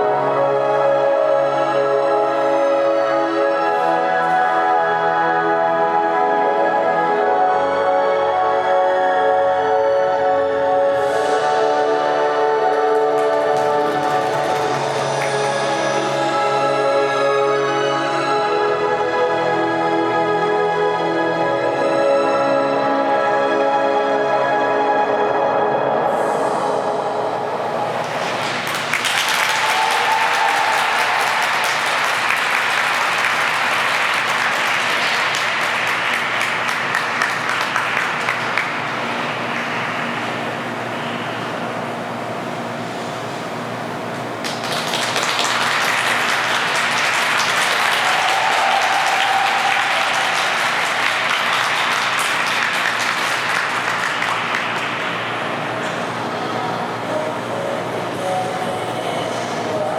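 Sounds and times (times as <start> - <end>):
audience applauding: 12.4 - 20.2, 27.4 - 41.8, 44.4 - 58.4.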